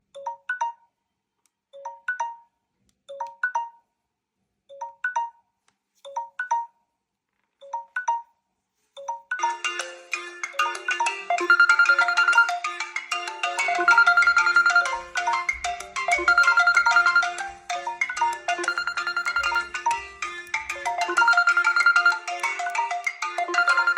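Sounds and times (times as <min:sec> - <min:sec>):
marimba-style ringtone melody: 0:00.1 - 0:00.9, 0:01.8 - 0:03.9, 0:04.7 - 0:05.4, 0:06.1 - 0:06.8, 0:07.6 - 0:08.4, 0:09.0 - 0:23.9
short phone chime: 0:16.2 - 0:17.3, 0:23.5 - 0:23.9.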